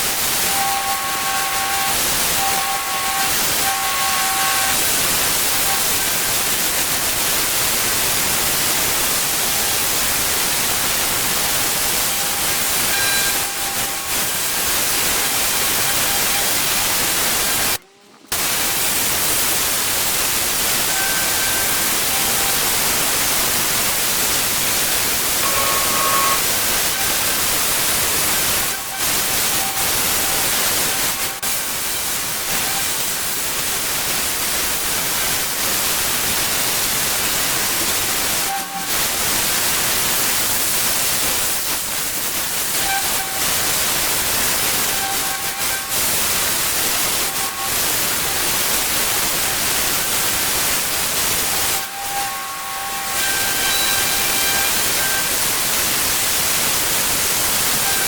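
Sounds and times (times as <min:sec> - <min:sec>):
pressure washer spraying: 0:00.0 - 0:17.8, 0:18.4 - 0:58.0.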